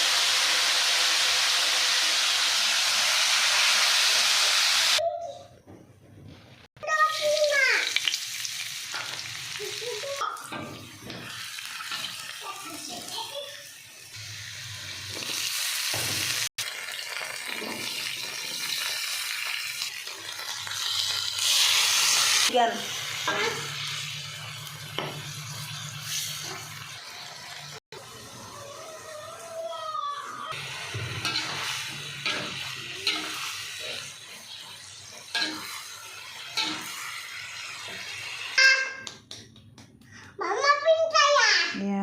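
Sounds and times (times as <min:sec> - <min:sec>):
food sizzling in hot oil: 0:00.0 - 0:05.0, 0:06.8 - 0:38.7
spatula scraping a pan: 0:30.6 - 0:38.6.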